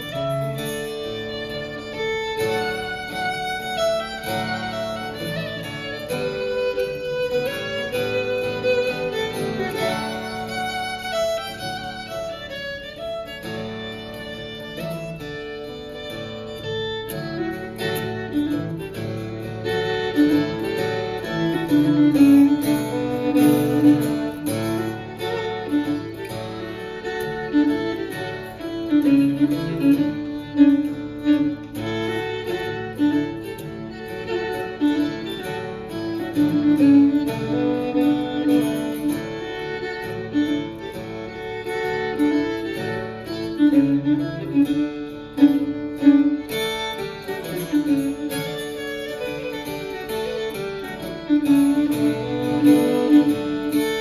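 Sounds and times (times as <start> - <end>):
fiddle melody: 0.0 - 54.0
strummed acoustic guitar: 0.0 - 54.0.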